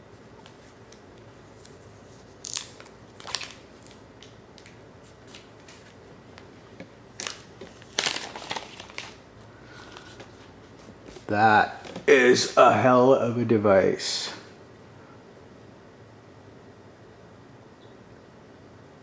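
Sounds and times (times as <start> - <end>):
plastic packaging crinkling: 1.6 - 6.0, 7.1 - 12.0.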